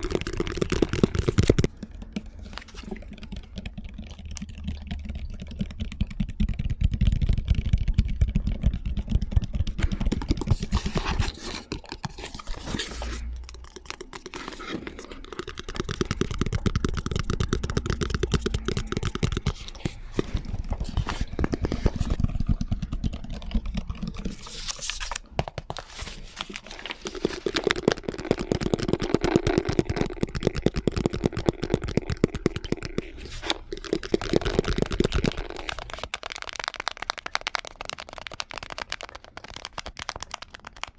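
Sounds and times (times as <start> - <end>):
fingernail tapping on objects: 15.2 - 23.9.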